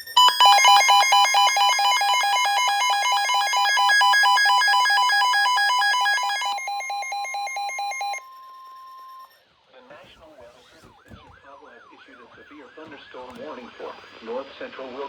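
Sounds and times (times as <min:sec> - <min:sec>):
electronic alarm alternating beeps: 0:00.0 - 0:09.4
steady high alarm tone: 0:00.0 - 0:09.4.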